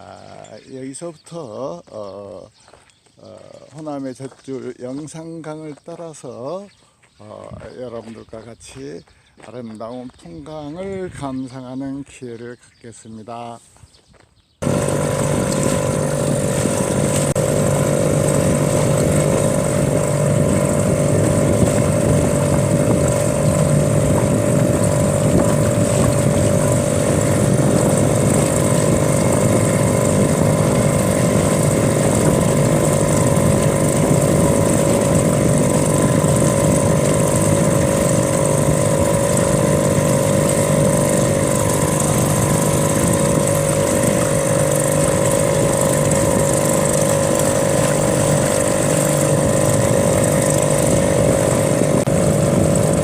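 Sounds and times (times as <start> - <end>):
boat motor droning: 0.0 - 2.4, 14.6 - 53.0.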